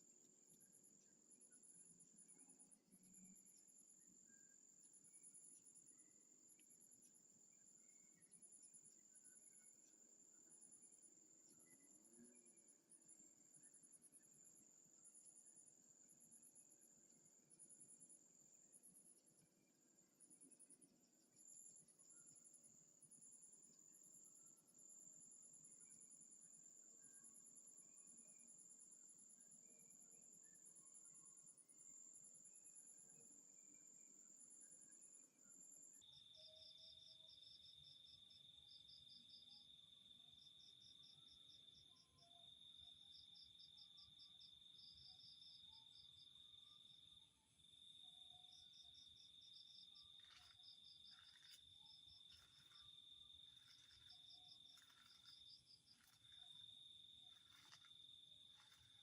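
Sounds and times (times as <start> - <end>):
insect chorus trilling: 48.2 - 59.0.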